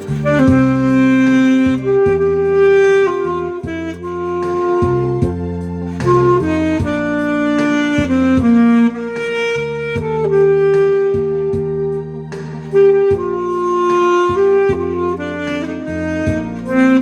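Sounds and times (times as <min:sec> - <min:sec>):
alto saxophone melody: 0:00.0 - 0:17.0
backing accompaniment: 0:00.0 - 0:17.0.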